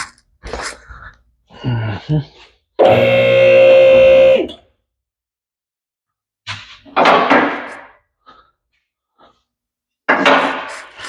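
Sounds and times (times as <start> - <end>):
pump motor whine: 2.8 - 4.6.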